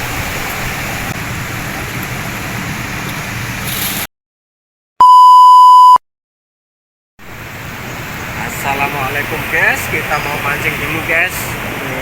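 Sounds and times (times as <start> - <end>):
loud electronic beep: 5.0 - 6.0.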